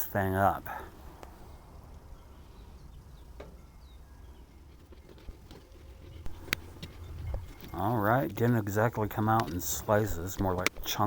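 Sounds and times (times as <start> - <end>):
low outdoor rumble: 0.0 - 11.0
faint bird chirps: 0.7 - 7.7.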